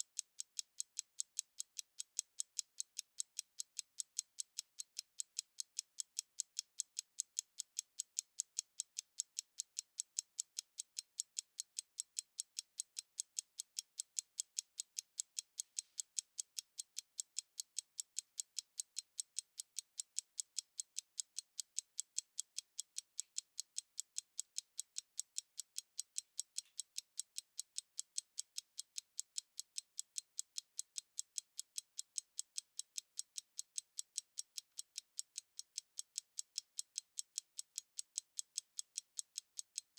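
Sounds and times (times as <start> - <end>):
stopwatch ticking: 0.0 - 39.9.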